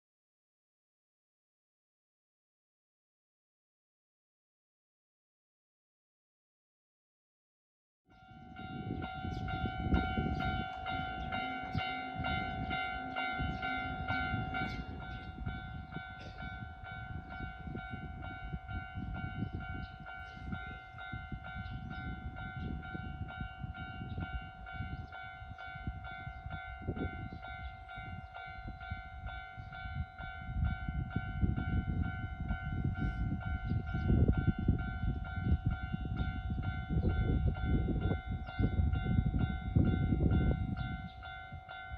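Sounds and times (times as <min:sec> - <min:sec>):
level crossing warning bell: 0:08.1 - 0:41.9
approaching train rumble: 0:08.2 - 0:41.2.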